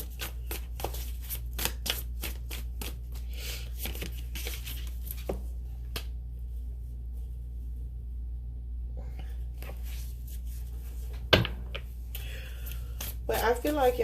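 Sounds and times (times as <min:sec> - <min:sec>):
cards being shuffled: 0:00.0 - 0:06.2, 0:12.6 - 0:13.7
steady low hum: 0:00.0 - 0:14.0.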